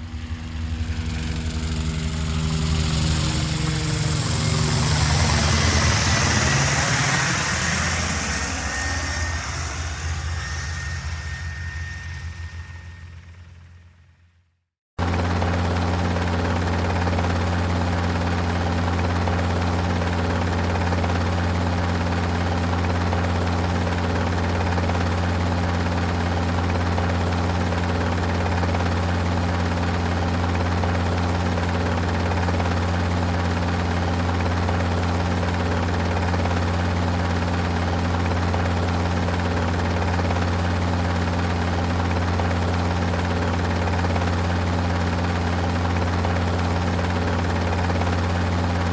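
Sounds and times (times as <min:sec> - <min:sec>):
helicopter running: 0:00.0 - 0:13.8, 0:15.0 - 0:48.9.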